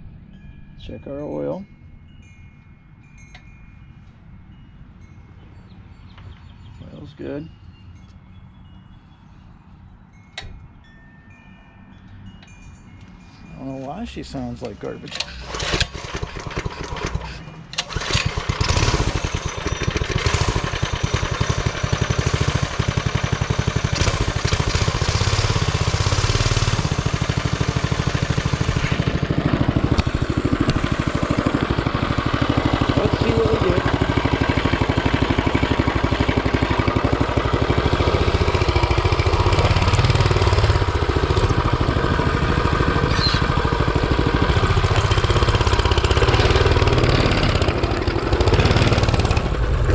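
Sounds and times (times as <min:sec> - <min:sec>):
mini bike engine running: 0:15.1 - 0:49.9.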